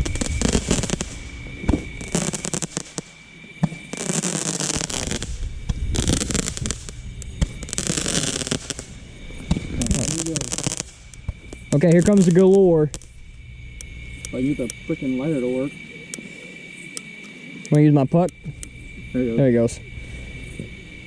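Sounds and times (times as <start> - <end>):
fireworks pops and cracks: 0.0 - 13.2
fireworks crackling hissing bursts: 0.0 - 21.0.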